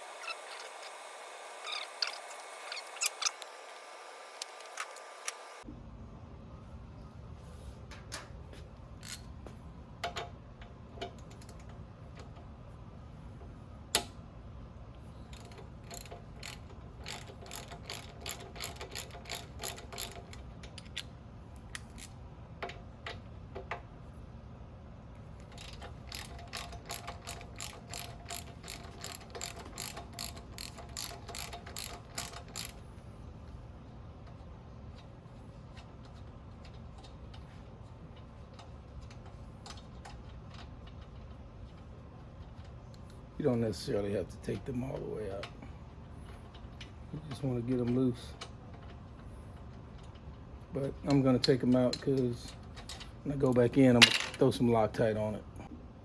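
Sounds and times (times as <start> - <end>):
hand ratchet clicking: 15.3 - 21.0, 25.5 - 32.8.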